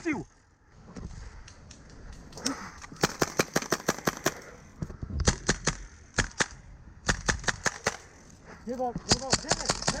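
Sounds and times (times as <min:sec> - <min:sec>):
airsoft guns firing: 0:02.9 - 0:04.5, 0:05.2 - 0:08.1.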